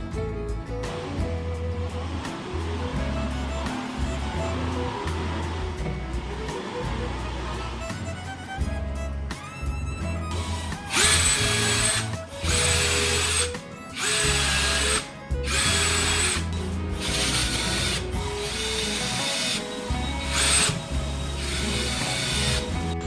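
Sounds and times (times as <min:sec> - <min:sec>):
background music: 0:00.0 - 0:23.0
electric power drill whine: 0:10.3 - 0:23.0.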